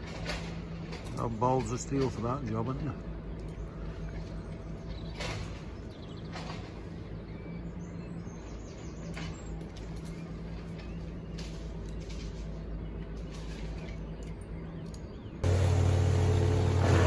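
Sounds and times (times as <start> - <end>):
engine humming: 0.0 - 17.0.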